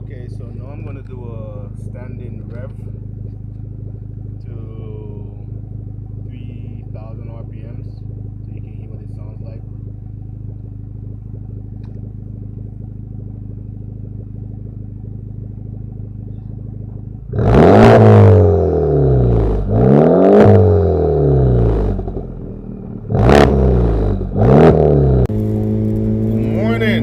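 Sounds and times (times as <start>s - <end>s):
car engine idling and revving: 0.0s - 27.0s.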